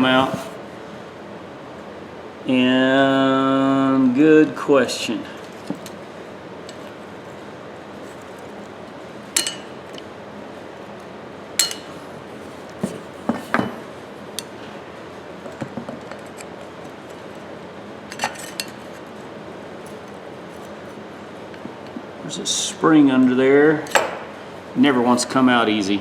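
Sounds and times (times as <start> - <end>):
metal tools clinking: 9.4 - 9.7, 11.6 - 12.0.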